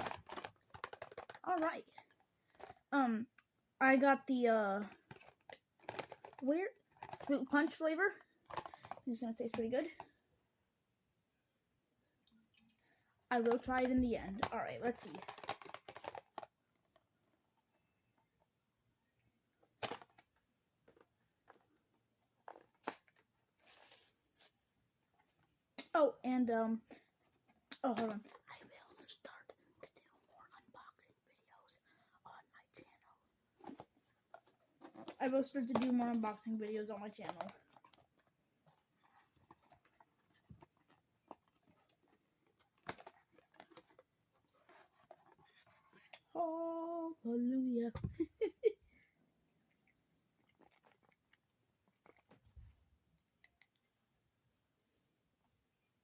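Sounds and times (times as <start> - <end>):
packaging crinkling rustle: 0.0 - 2.8, 4.8 - 7.3, 22.4 - 24.7
packaging clicks and rustles: 0.0 - 2.9, 4.8 - 7.4, 8.2 - 9.1, 14.4 - 17.1, 32.8 - 46.3.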